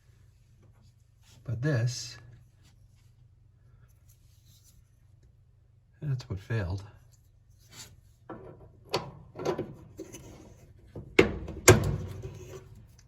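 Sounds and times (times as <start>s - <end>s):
dryer parts knocking and scraping: 7.8s - 13.0s.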